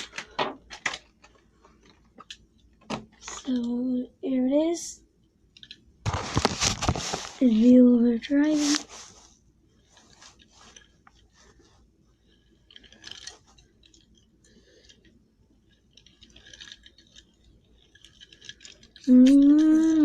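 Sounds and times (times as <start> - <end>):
plastic toy truck clicking and rattling: 0.0 - 3.7, 12.5 - 15.1, 15.7 - 20.0
person speaking: 7.1 - 9.1, 19.0 - 20.0.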